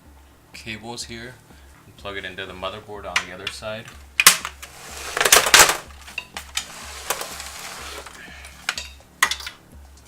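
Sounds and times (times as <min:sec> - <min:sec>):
cable rustling scrape: 0:04.5 - 0:08.7.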